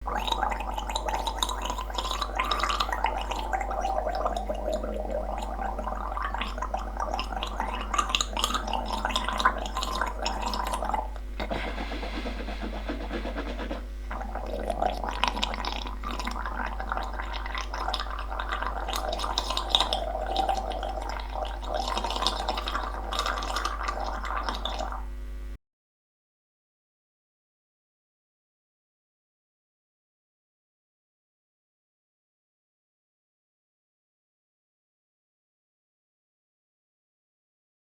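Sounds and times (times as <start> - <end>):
person gargling: 0.0 - 25.1.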